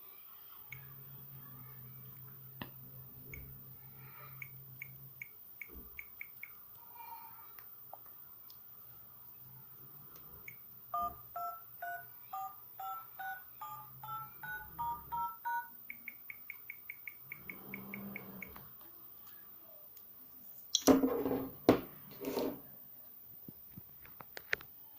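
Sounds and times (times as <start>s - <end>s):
phone keypad dialing beeps: 11.0s - 15.8s.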